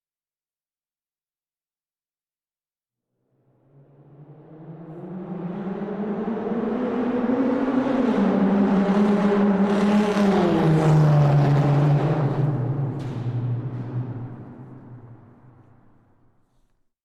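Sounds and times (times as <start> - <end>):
car engine in a tunnel: 3.2 - 16.4.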